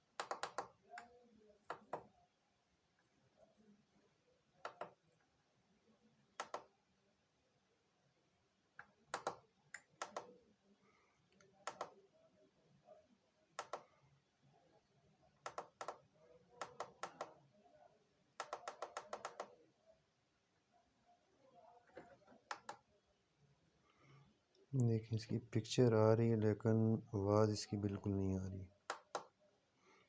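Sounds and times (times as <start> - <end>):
remote control buttons clicking: 0.1 - 2.1, 4.6 - 5.0, 6.4 - 6.7, 8.8 - 10.4, 11.4 - 12.0, 13.6 - 13.8, 15.4 - 16.0, 16.6 - 17.4, 18.4 - 19.6, 22.4 - 22.9, 28.8 - 29.4.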